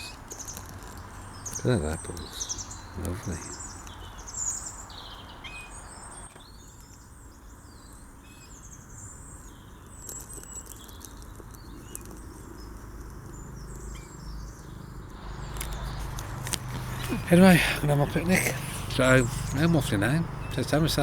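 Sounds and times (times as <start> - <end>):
road traffic rumble: 0.0 - 6.5, 8.9 - 21.0
small birds chirping: 0.0 - 21.0.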